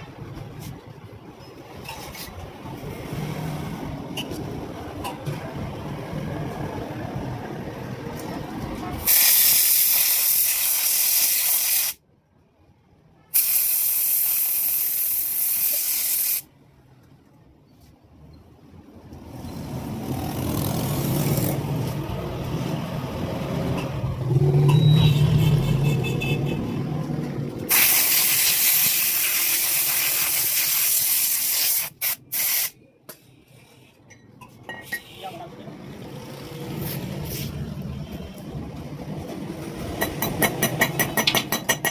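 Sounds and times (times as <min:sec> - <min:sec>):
pressurized spray hissing: 0:09.1 - 0:12.0, 0:13.4 - 0:16.4, 0:27.7 - 0:32.8.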